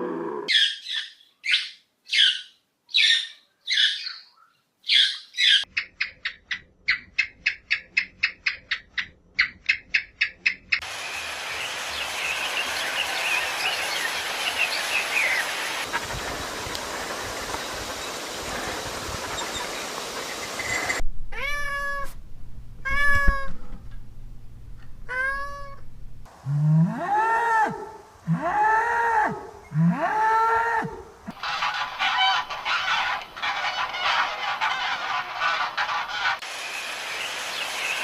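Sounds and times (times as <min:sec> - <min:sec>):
steady noisy hiss: 0:10.8 - 0:22.8, 0:25.9 - 0:26.5, 0:27.8 - 0:28.3, 0:31.0 - 0:38.0
cat meowing: 0:21.3 - 0:22.2, 0:22.8 - 0:23.5, 0:25.1 - 0:25.8
waterfowl honking: 0:31.3 - 0:36.4.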